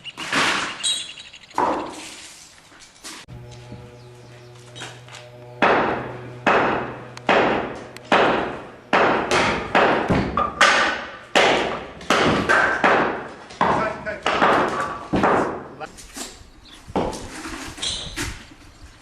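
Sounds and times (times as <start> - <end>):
low steady hum: 3.3 - 10.4
sharp knocks: 5.6 - 15.8.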